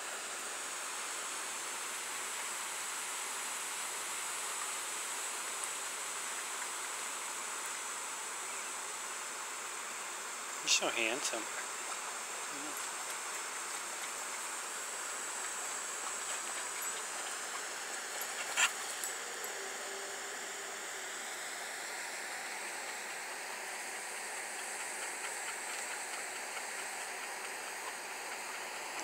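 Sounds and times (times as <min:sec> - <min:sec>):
outdoor background hiss: 0:00.0 - 0:29.0.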